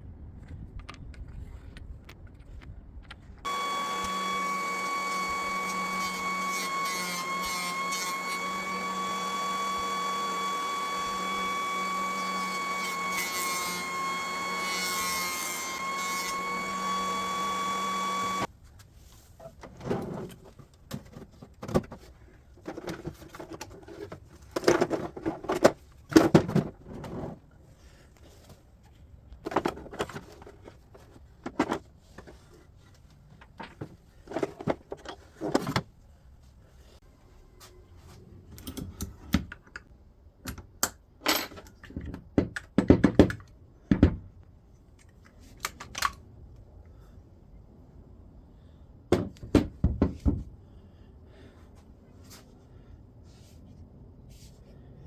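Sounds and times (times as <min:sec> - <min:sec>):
machine whining and humming: 0:03.5 - 0:18.5.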